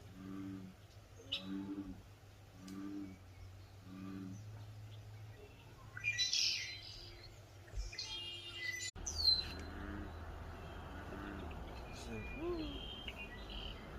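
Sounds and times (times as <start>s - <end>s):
low humming hoot: 0.0s - 5.9s, 9.3s - 13.9s
bird chirping: 0.2s - 13.9s.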